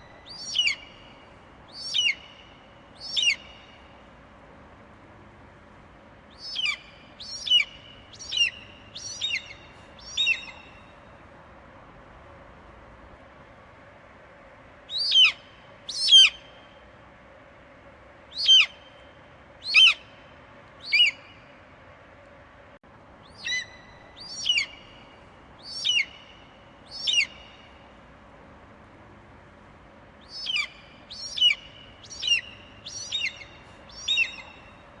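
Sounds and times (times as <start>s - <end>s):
eagle calling: 0.0s - 1.1s, 1.7s - 2.4s, 3.0s - 3.8s, 6.4s - 10.8s, 14.9s - 16.5s, 18.3s - 18.9s, 19.6s - 20.1s, 20.8s - 21.4s, 23.2s - 25.0s, 25.6s - 26.3s, 26.9s - 27.6s, 30.2s - 34.8s
faint steady hiss: 0.0s - 35.0s.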